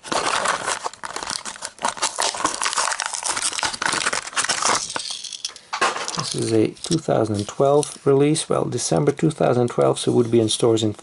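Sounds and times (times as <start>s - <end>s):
packaging crinkling and tearing: 0.0s - 8.0s.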